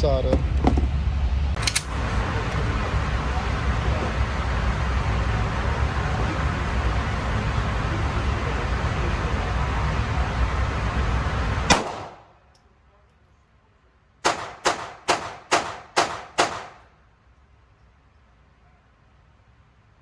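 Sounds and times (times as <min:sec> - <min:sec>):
pistol shots: 0:11.7 - 0:12.4, 0:14.2 - 0:16.9
sharp crack: 0:11.7 - 0:12.4, 0:14.2 - 0:16.9.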